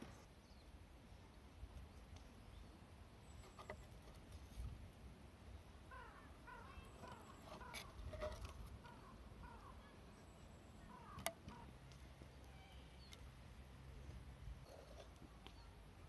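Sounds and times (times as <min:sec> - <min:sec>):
bird chirps: 0:12.4 - 0:13.3.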